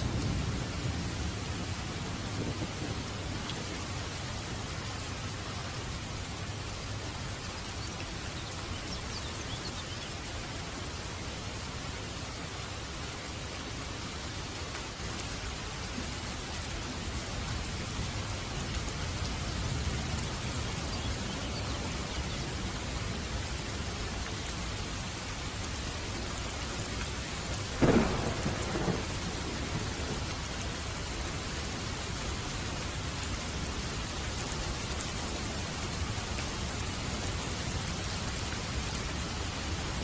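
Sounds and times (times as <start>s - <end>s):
rain hiss: 0.0s - 40.0s
loud thunderclap: 27.8s - 30.2s.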